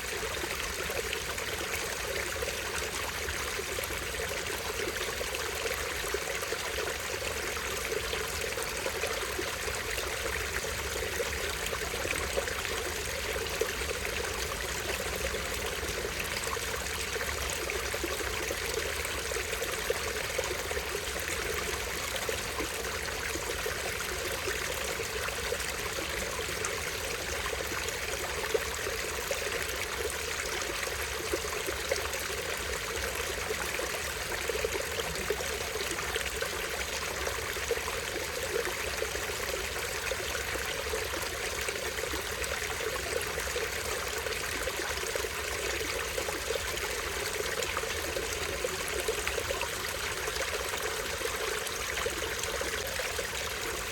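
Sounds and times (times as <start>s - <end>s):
stream trickling over waterfall: 0.0s - 53.9s.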